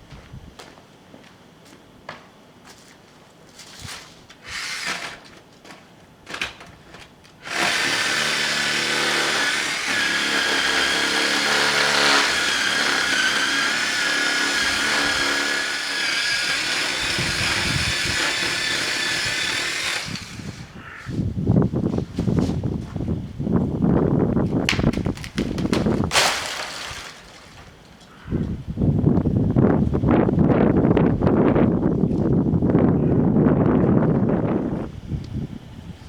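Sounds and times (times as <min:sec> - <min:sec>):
rustles and scrapes: 0:02.7 - 0:07.2, 0:21.0 - 0:23.2
power saw whining: 0:04.4 - 0:05.4, 0:07.4 - 0:20.8.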